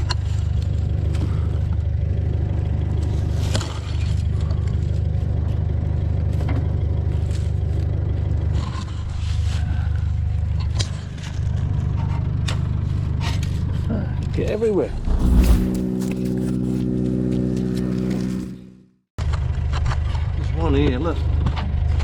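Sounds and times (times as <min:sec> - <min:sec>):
vehicle engine running at low speed: 0:00.0 - 0:22.0
branches scraping along vehicle: 0:14.8 - 0:18.8.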